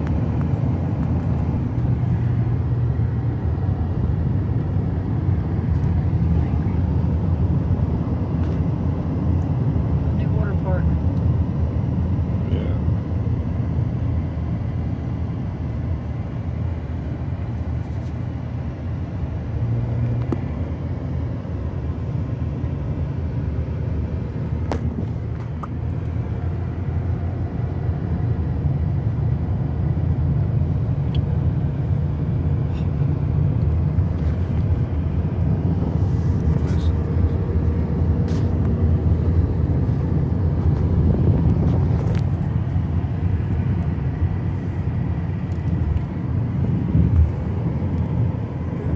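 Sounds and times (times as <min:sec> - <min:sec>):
car driving rumble: 0:00.0 - 0:48.9.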